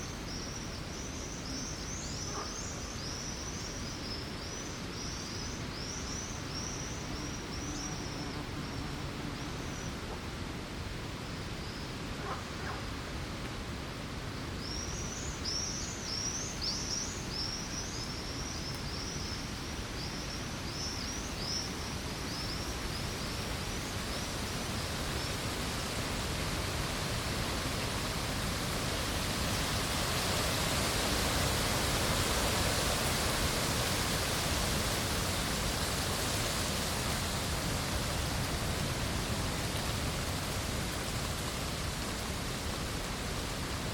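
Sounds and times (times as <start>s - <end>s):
steady outdoor hiss: 0.0s - 43.9s.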